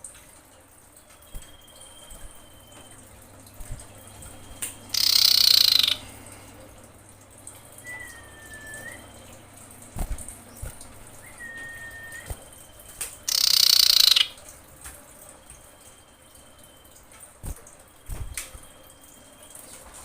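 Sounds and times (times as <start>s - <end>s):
sharp clicks: 1.2s - 6.1s
bird long whistles: 4.9s - 6.0s, 7.8s - 9.2s, 11.2s - 12.6s, 13.3s - 14.3s.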